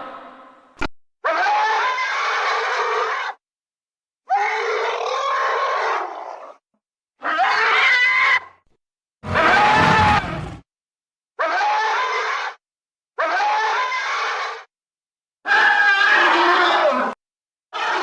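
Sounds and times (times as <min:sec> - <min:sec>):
monster roars: 0:09.2 - 0:10.6.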